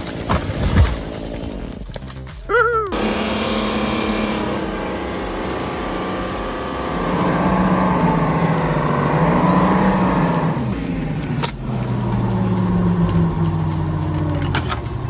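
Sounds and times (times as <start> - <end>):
heavy vehicle engine under load: 2.9 - 15.0.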